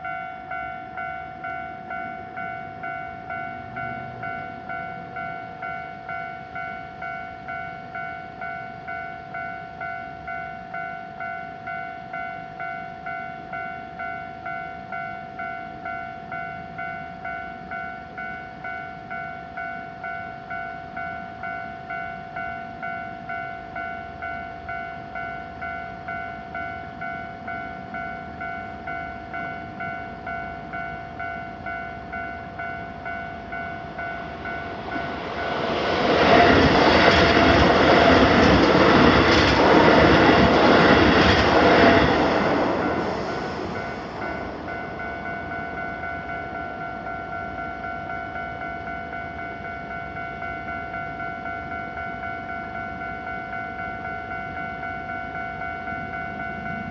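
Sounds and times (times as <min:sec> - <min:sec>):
train rushing past: 0:02.4 - 0:07.6, 0:31.6 - 0:48.5, 0:55.8 - 0:56.9.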